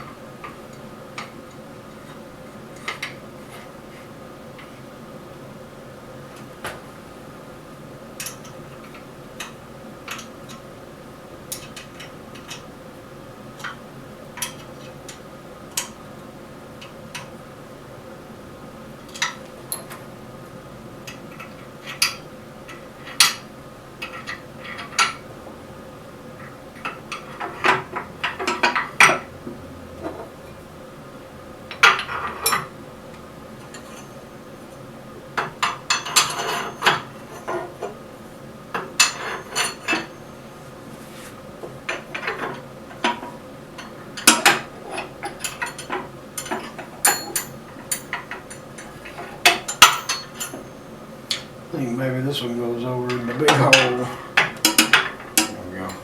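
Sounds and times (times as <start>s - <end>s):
metal tools clinking: 45.4s - 48.3s, 49.0s - 50.7s.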